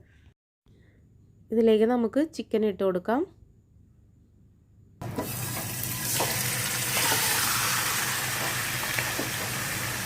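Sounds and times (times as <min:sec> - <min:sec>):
chicken sizzling in oil: 0:05.0 - 0:10.0.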